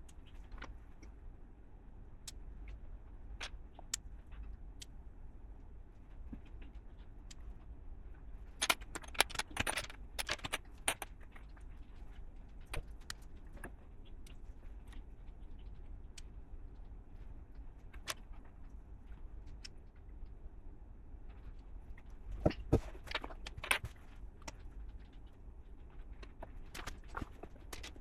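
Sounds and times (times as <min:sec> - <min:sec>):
low steady hum: 0:00.0 - 0:28.0
plastic toy bricks clicking: 0:08.6 - 0:11.2.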